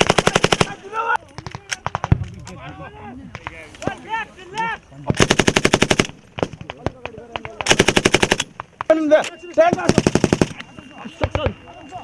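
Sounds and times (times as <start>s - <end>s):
machine gun fire: 0.0s - 0.8s, 5.2s - 6.6s, 7.6s - 8.5s, 9.7s - 10.6s.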